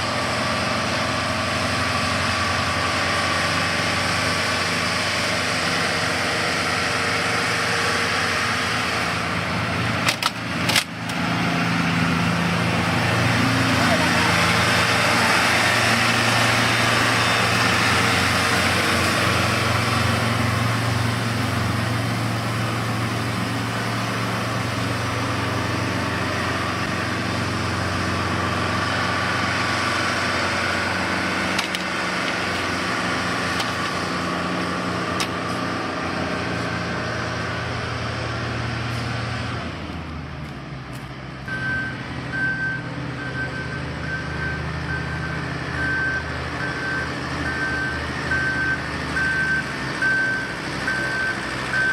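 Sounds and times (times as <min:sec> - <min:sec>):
heavy machinery engines running: 0:00.0 - 0:51.9
reversing alarm beeping: 0:41.5 - 0:51.9.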